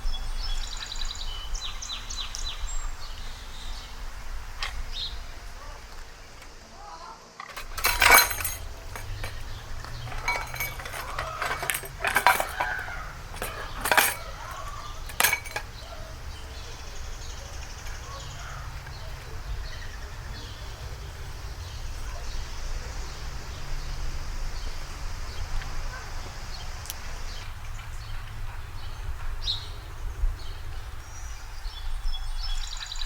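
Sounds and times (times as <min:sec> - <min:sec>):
utensils clinking: 0:04.6 - 0:22.2.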